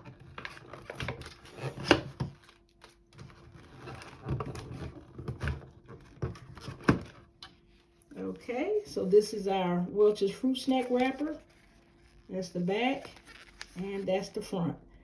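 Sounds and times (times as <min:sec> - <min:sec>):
paper wrapper rustling: 0:00.0 - 0:08.1, 0:10.4 - 0:14.4.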